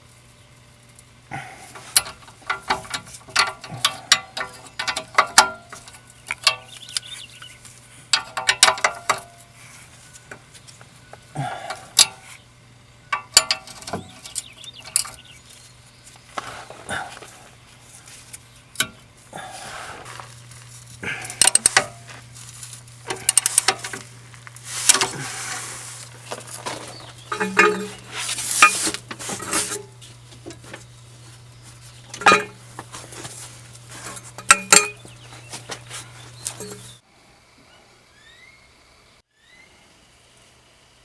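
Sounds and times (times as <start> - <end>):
steady low hum: 0.0 - 38.1
metal tools clinking and rattling: 1.7 - 10.3, 13.1 - 15.3, 20.1 - 37.0
scraping and shuffling: 13.7 - 37.0.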